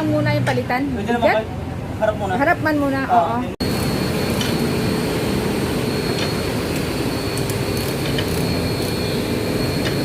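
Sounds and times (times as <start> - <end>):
mechanical whine: 3.6 - 10.0.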